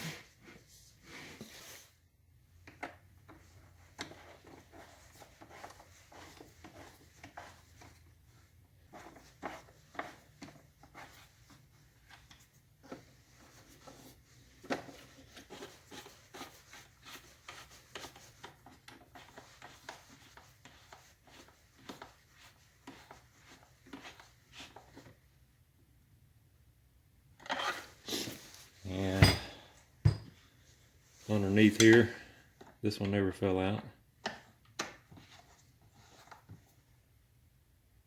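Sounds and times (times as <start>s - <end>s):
tools clicking and scraping on plastic: 13.8s - 22.2s.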